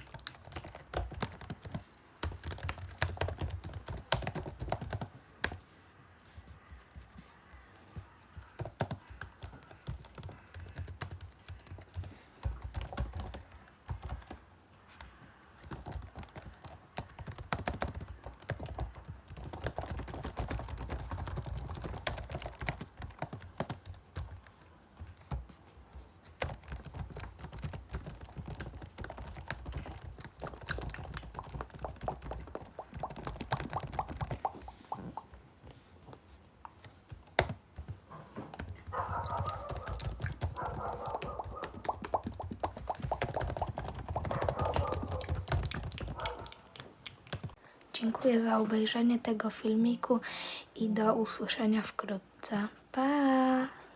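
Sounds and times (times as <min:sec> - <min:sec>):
typing on computer keyboard: 0:00.0 - 0:05.6, 0:08.3 - 0:14.4, 0:15.6 - 0:25.5, 0:26.2 - 0:34.5, 0:36.8 - 0:47.6.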